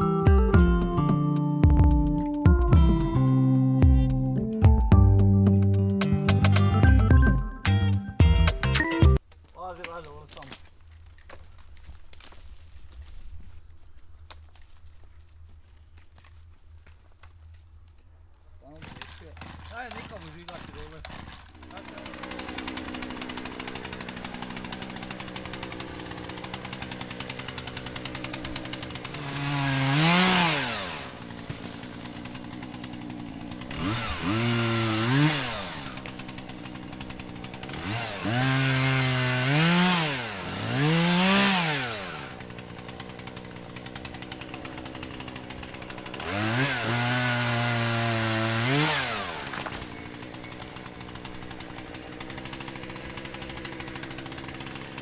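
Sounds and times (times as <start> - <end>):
chainsaw idling and revving: 18.6 - 55.0.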